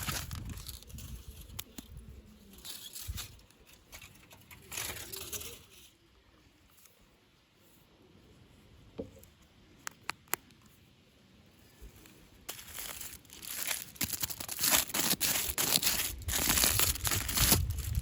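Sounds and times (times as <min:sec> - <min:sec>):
packaging crinkling and tearing: 0:00.0 - 0:03.7, 0:12.4 - 0:18.0.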